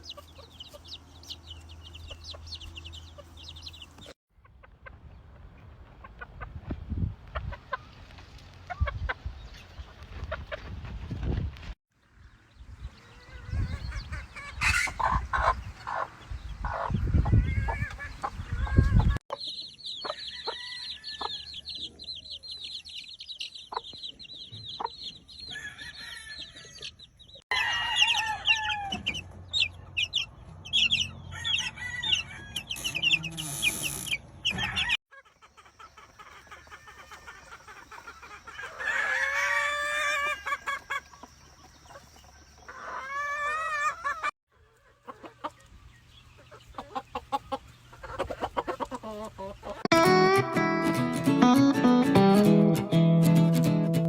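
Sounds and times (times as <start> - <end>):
chickens clucking: 0.0 - 11.4, 12.6 - 27.4, 28.1 - 49.9
rooster crowing: 20.2 - 21.6, 25.5 - 26.8, 27.5 - 29.1, 31.2 - 33.0, 38.5 - 40.6.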